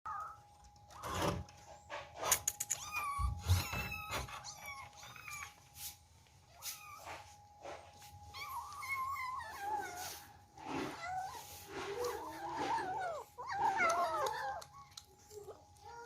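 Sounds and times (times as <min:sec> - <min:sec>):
kittens mewing: 0:08.6 - 0:16.0.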